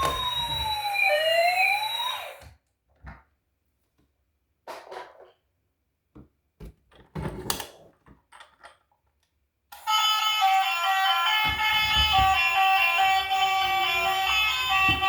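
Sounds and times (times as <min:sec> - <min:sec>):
electronic toy tune: 0:09.8 - 0:15.0.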